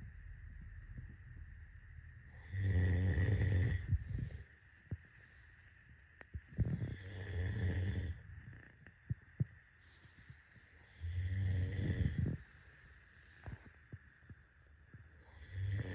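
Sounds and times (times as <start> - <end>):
person snoring: 2.4 - 4.2, 6.6 - 8.2, 10.8 - 12.4, 15.3 - 15.9
airy breath: 9.8 - 11.1.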